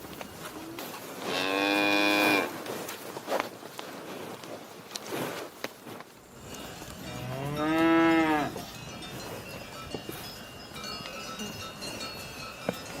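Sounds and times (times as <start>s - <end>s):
faint bell tones: 6.3s - 13.0s
cow mooing: 7.1s - 8.6s.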